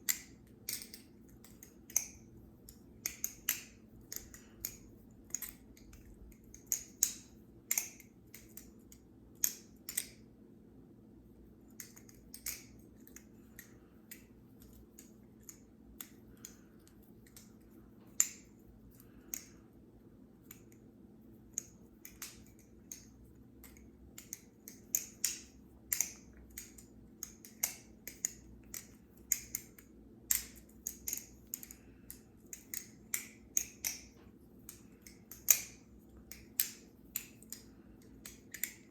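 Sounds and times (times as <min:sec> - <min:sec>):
butterfly knife clicking: 0:00.0 - 0:10.2, 0:21.5 - 0:38.9.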